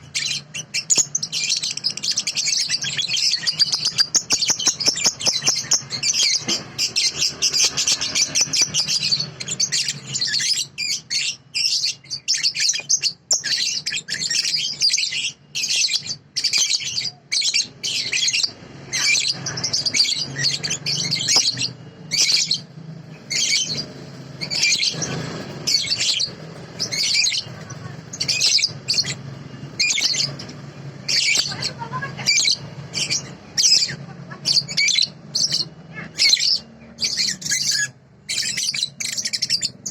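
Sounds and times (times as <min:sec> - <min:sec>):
songbird chirping: 0:00.0 - 0:39.9.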